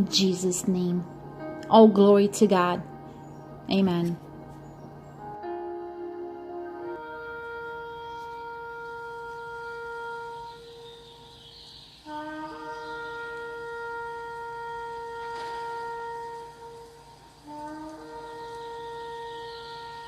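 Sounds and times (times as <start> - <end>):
ram's horn blasts: 12.0 - 20.0.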